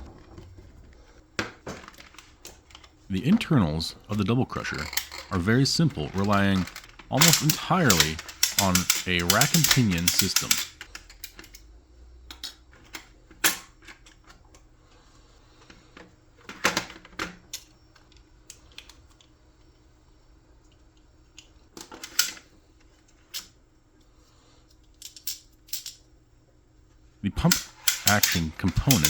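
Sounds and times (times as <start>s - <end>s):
plastic clicks and clacks: 4.1s - 11.6s, 27.4s - 29.0s.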